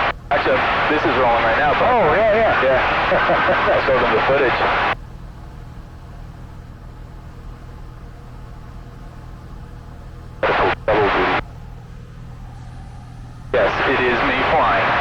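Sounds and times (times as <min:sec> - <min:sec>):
voice: 0:00.0 - 0:05.0, 0:10.4 - 0:11.4, 0:13.6 - 0:15.0
airplane engine and propeller drone: 0:00.0 - 0:15.0.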